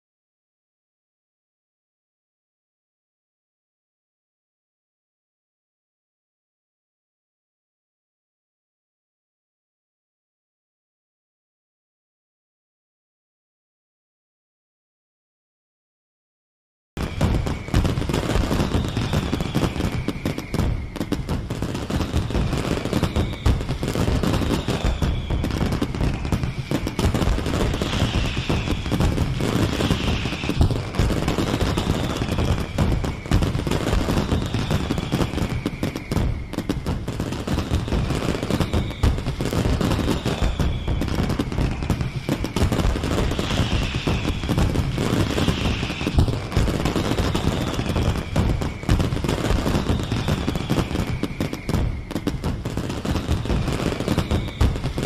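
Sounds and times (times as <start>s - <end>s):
fireworks crackling and banging: 17.0s - 55.0s
fireworks whistling down in pitch: 17.0s - 55.0s.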